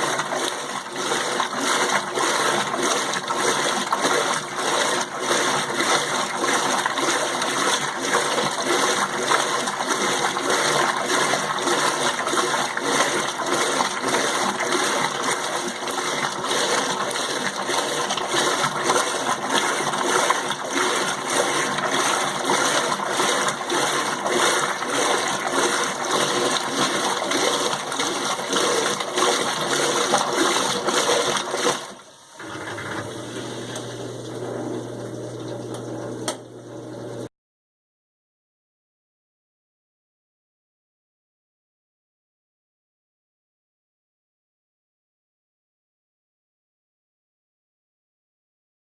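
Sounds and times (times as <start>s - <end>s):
water rushing in washing machine: 0.0s - 37.3s.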